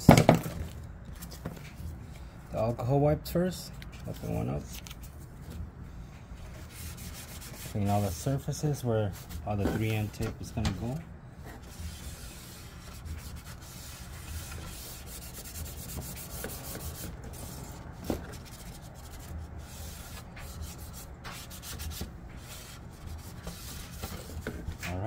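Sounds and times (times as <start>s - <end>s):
wipe rubbing a surface: 6.5s - 25.0s.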